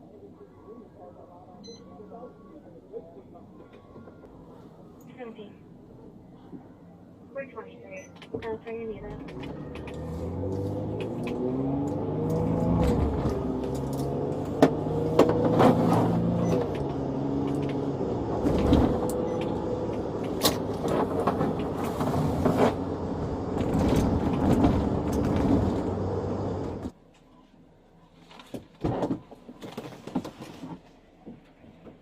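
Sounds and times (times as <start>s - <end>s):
car engine running: 9.0s - 26.9s.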